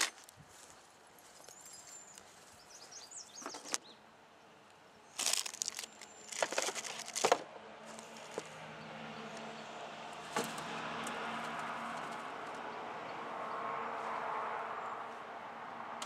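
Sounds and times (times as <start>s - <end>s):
wrappers rustling and crinkling: 0.0s - 2.5s, 5.2s - 8.5s.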